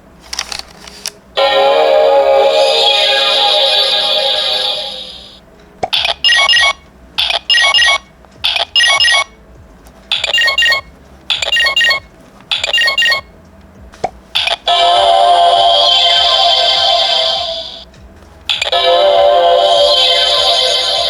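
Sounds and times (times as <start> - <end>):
background music: 1.2 - 21.0
toy electronic beeps: 1.4 - 9.3, 10.1 - 13.3, 14.4 - 17.8, 18.5 - 21.0
toy clicks: 5.8 - 9.2, 10.1 - 13.2, 14.4 - 17.1, 18.5 - 18.9.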